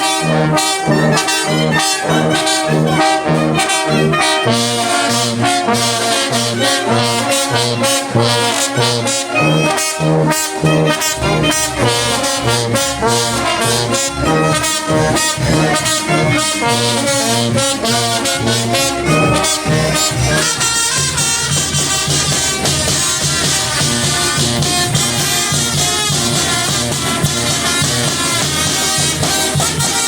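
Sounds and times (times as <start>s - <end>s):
brass band playing: 0.0s - 30.0s
pulsing bass line: 0.2s - 20.6s.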